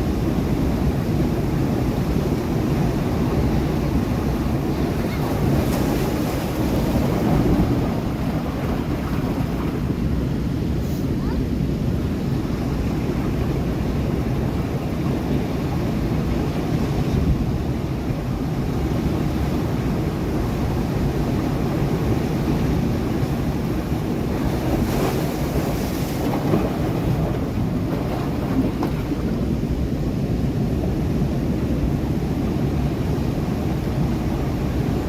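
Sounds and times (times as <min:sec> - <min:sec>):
waves breaking against rocks: 0:00.4 - 0:10.2, 0:12.7 - 0:29.8.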